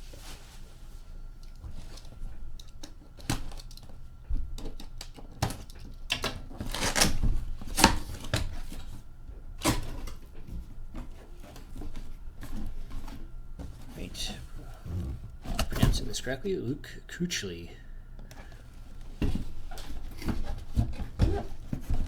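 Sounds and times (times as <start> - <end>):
cardboard box being opened: 14.4 - 16.0.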